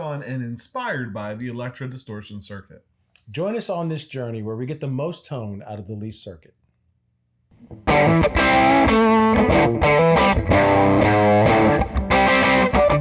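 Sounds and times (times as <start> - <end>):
distorted electric guitar riff: 7.6 - 13.0.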